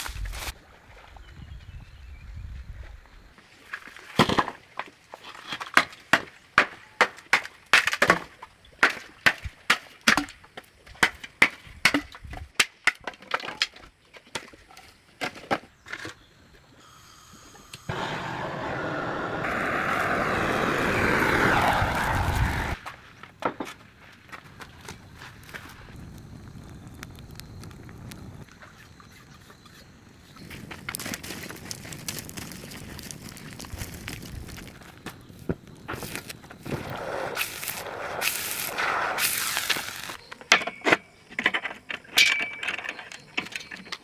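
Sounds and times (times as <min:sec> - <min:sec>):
steady rushing noise: 0:17.9 - 0:22.8.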